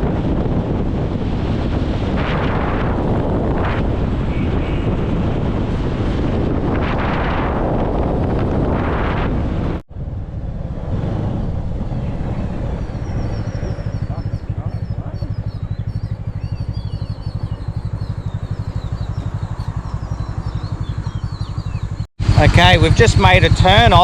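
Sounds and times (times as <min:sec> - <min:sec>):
wind on microphone: 0:00.0 - 0:24.0
birds chirping: 0:11.9 - 0:24.0
motorbike engine idling: 0:13.0 - 0:24.0.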